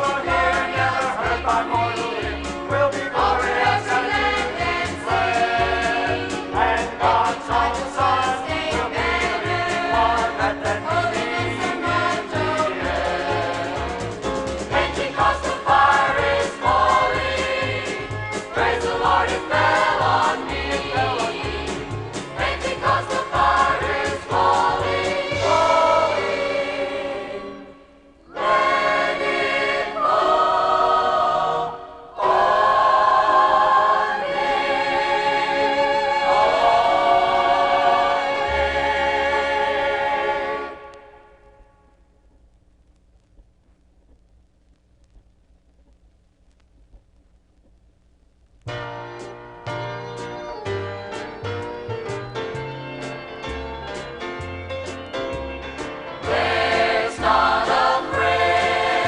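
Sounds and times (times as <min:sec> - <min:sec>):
band accompaniment: 0:00.0 - 0:26.6, 0:48.7 - 0:59.0
gospel choir singing: 0:00.0 - 0:41.4, 0:56.2 - 0:59.0.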